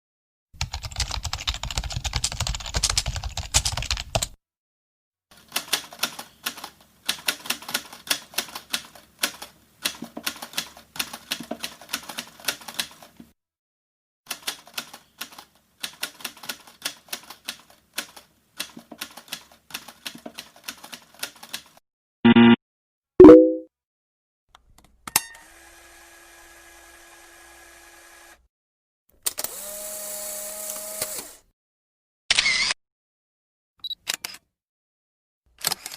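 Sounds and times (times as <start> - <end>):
typing on mechanical keyboard: 0.6 - 4.4, 5.5 - 13.1, 14.3 - 21.7.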